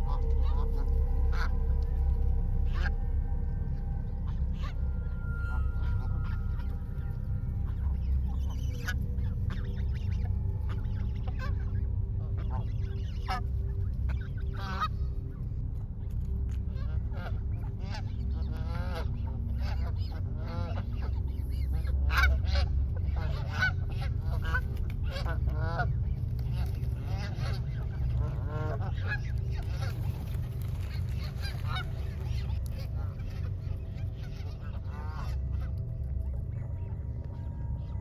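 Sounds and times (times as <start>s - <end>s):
geese honking: 0.0s - 3.0s, 19.6s - 37.9s
low rumble: 0.0s - 38.0s.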